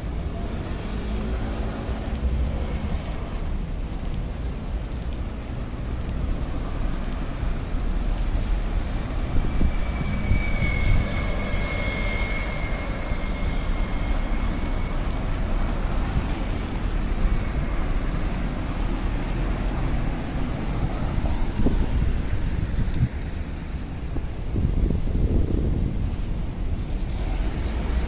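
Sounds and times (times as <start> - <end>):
traffic rumble: 0.0 - 28.0
faint high whine: 8.8 - 16.7.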